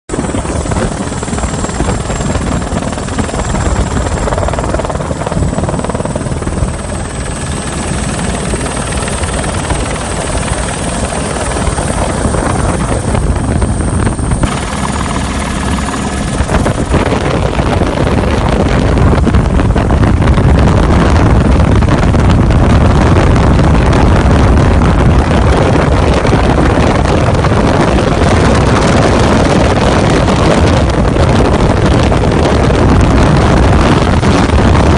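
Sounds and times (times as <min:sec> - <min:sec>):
helicopter rotor and engine: 0:00.1 - 0:34.9.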